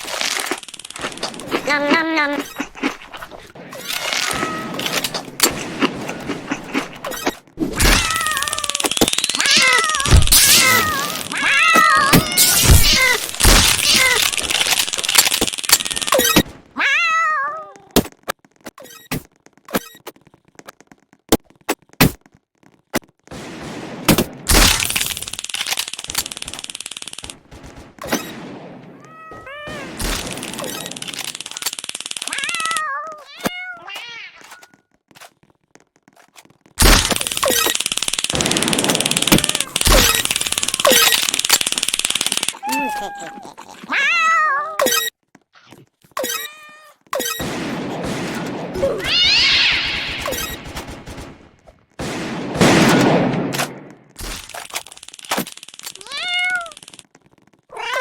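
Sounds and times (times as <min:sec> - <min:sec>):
loud rustling rattling noise: 0:00.0 - 0:01.8, 0:08.0 - 0:11.4, 0:13.0 - 0:16.2, 0:24.8 - 0:28.0, 0:30.0 - 0:32.8, 0:36.8 - 0:42.6, 0:54.1 - 0:57.4
cats meowing: 0:04.0 - 0:05.2, 0:07.8 - 0:13.2, 0:29.0 - 0:30.0, 0:32.3 - 0:34.4, 0:42.6 - 0:44.8, 0:48.9 - 0:50.2, 0:56.0 - 0:56.9.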